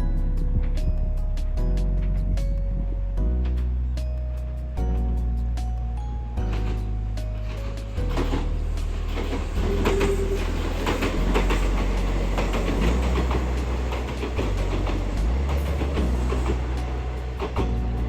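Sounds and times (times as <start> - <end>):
background music: 0.0 - 18.0
train wheels clacking on rail joints: 6.5 - 18.0.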